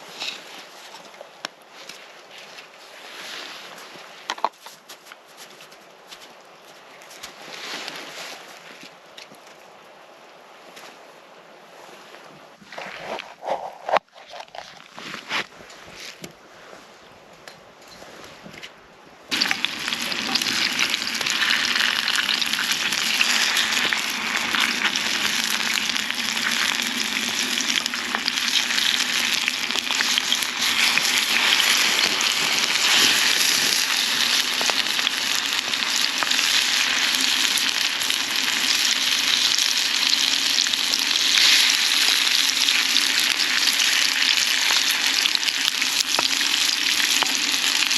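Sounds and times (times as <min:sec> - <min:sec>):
food sizzling in frying pan: 0:19.3 - 0:47.9.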